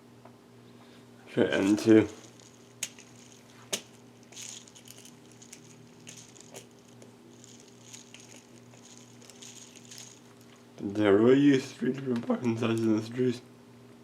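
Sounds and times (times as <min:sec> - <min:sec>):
low electrical hum: 0:00.0 - 0:14.0.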